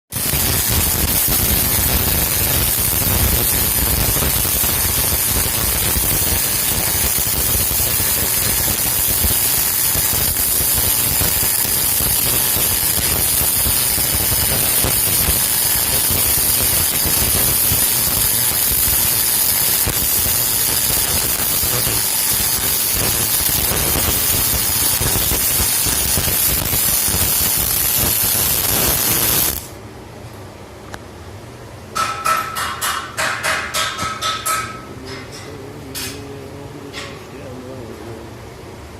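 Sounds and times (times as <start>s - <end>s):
welding arc crackling: 0.1s - 29.8s.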